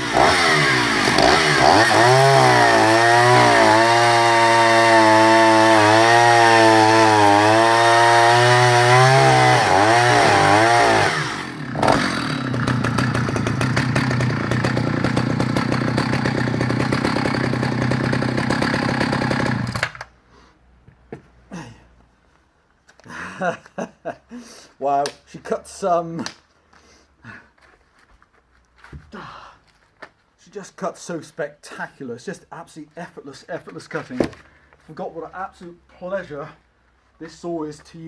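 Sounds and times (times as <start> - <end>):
chainsaw cutting timber: 0.0 - 20.1.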